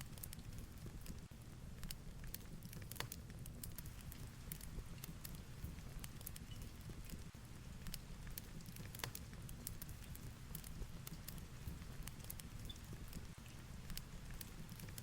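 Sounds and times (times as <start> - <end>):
fireplace crackling and popping: 0.0 - 15.0.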